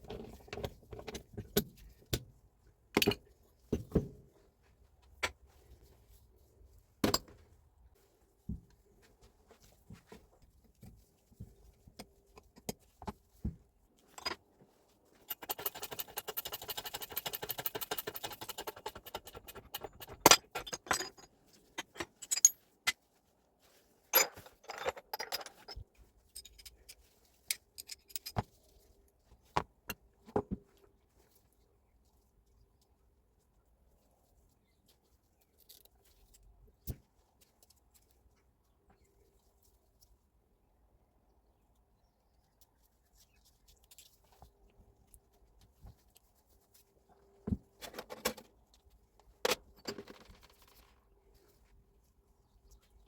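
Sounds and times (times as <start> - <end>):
metal parts clinking on workbench: 15.3 - 22.6, 24.2 - 25.8.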